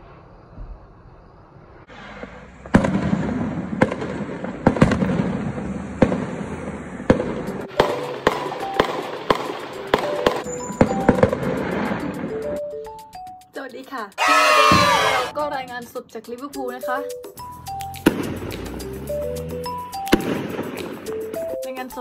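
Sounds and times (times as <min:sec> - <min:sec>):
fireworks exploding: 0:00.0 - 0:12.5, 0:18.0 - 0:18.8, 0:20.0 - 0:21.4.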